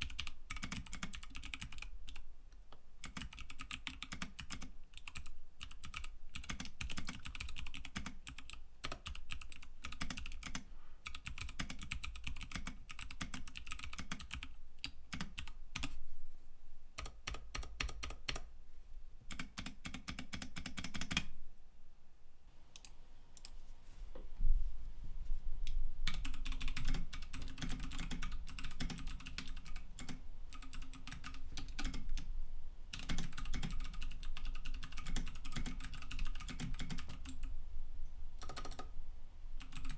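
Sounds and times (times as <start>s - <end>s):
clicky keyboard typing: 0.0s - 2.2s, 3.0s - 16.0s, 17.0s - 18.5s, 19.3s - 21.3s, 26.1s - 32.3s, 32.9s - 37.5s, 38.4s - 38.9s, 39.6s - 39.9s.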